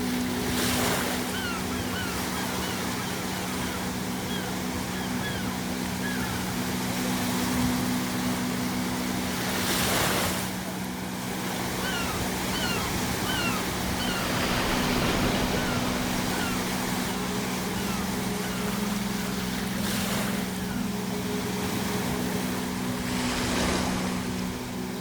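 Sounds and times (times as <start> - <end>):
seagulls calling: 0.0 - 7.6, 10.9 - 25.0
ocean waves breaking: 0.0 - 25.0
steady low hum: 10.4 - 25.0.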